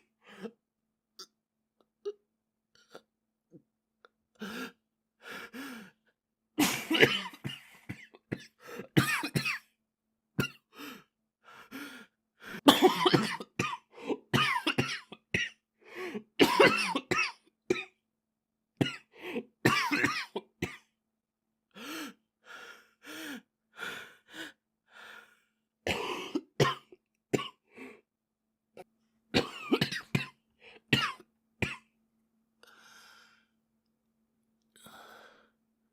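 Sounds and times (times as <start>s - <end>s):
boy coughing: 6.6s - 9.6s, 12.7s - 15.6s, 16.4s - 17.4s, 19.7s - 20.8s, 29.4s - 30.3s.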